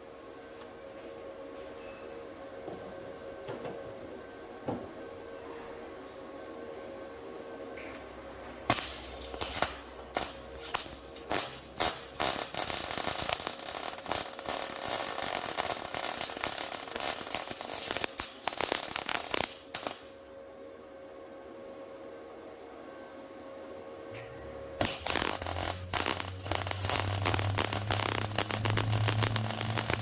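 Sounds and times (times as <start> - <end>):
tack welding on steel: 7.8 - 20.2, 24.2 - 30.0.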